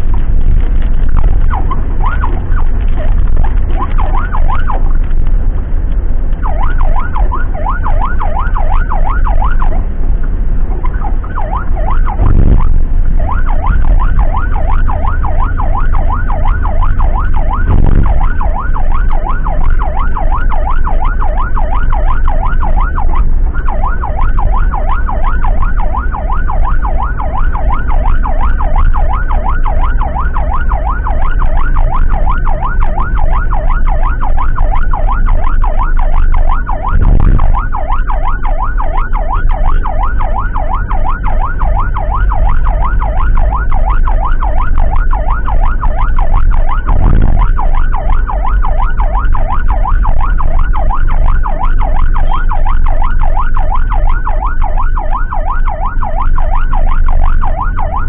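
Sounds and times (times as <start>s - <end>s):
emergency siren yelping: 0.0s - 5.2s, 6.3s - 10.0s, 10.7s - 58.0s
vehicle rumble on road: 0.0s - 58.0s
dull thuds: 12.0s - 15.0s, 17.6s - 18.6s, 36.8s - 37.8s, 46.3s - 48.4s.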